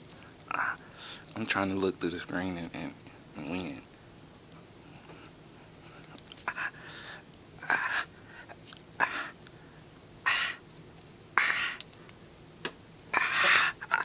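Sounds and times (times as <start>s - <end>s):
person making hissing mouth noises: 6.4s - 6.8s, 7.6s - 8.1s, 9.0s - 9.4s, 10.2s - 10.6s, 11.4s - 11.9s, 13.1s - 14.0s.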